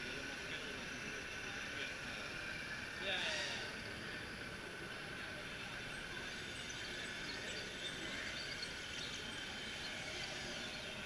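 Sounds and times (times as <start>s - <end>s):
ambient background noise: 0.0s - 11.0s.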